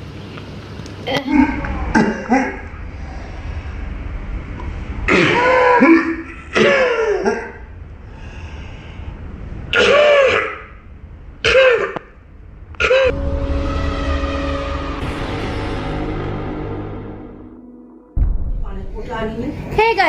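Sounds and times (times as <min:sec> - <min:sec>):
person coughing: 0:11.5 - 0:12.0, 0:12.8 - 0:13.1.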